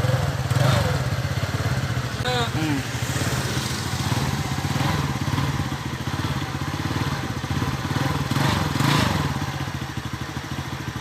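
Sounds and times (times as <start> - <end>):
scooter engine idling: 0.0 - 11.0.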